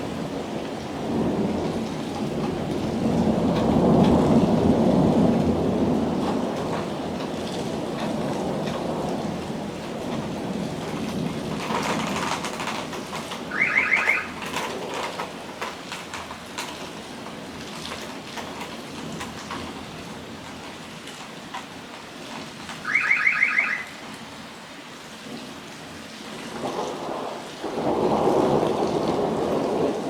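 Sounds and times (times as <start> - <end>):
thunder rumble: 0.0 - 17.6, 26.3 - 30.0
steady rain: 0.0 - 30.0
electronic chirp: 13.5 - 14.3, 22.9 - 24.0.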